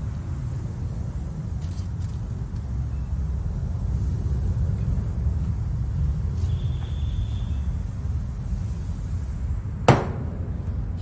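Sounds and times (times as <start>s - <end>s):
sharp knock: 9.9s - 10.4s.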